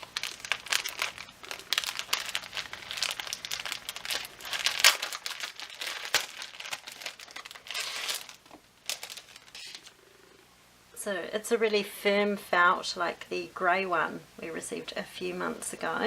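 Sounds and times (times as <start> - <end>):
packaging crinkling: 0.0 - 9.9.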